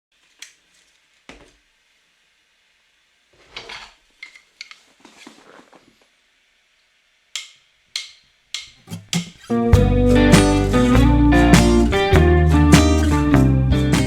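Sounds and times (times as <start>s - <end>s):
small objects clicking and tapping: 7.4s - 9.4s.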